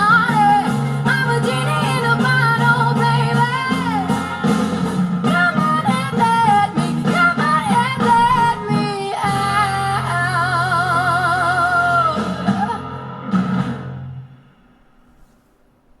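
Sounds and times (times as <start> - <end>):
woman singing with vibrato: 0.0 - 13.4
pop song over speaker: 0.0 - 14.0.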